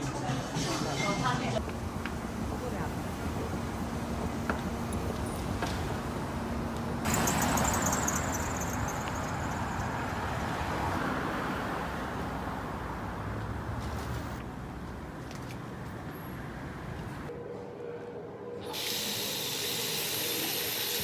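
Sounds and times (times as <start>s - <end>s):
vehicle passing by: 5.4s - 17.3s.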